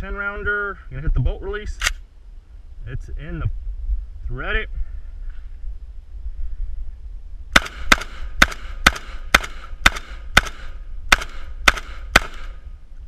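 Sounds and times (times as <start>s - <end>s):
shotgun firing rapidly: 7.6s - 12.6s.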